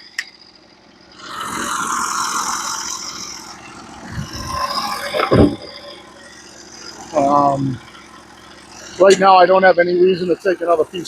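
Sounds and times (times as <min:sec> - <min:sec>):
wood slab scraping: 0:01.2 - 0:07.3.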